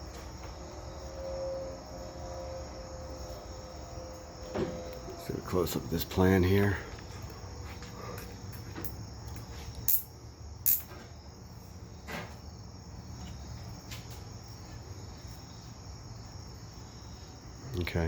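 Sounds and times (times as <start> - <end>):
crickets chirring: 0.0 - 18.0.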